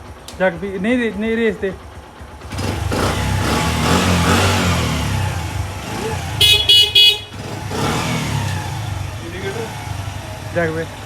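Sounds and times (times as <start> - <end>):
motorcycle engine revving: 0.0 - 11.0
motorcycle horn beeps: 6.2 - 7.9.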